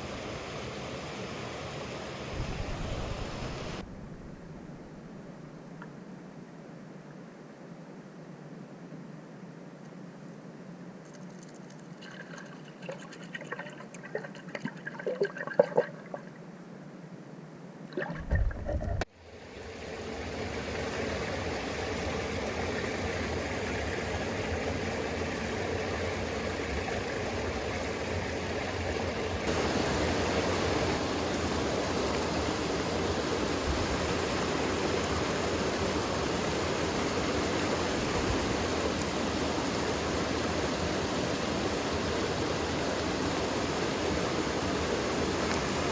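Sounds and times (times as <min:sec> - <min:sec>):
mountain stream flowing: 0:00.0 - 0:03.8, 0:11.5 - 0:16.2, 0:19.1 - 0:45.9.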